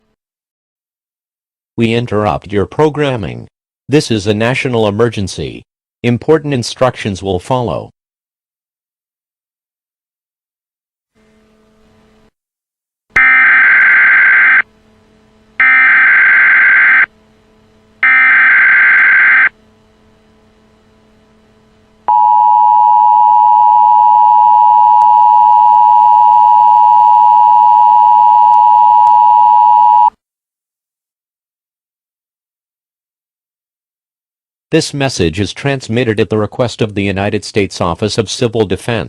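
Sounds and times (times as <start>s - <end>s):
two-tone attention signal: 13.2s - 14.6s, 18.0s - 19.5s, 22.1s - 30.1s.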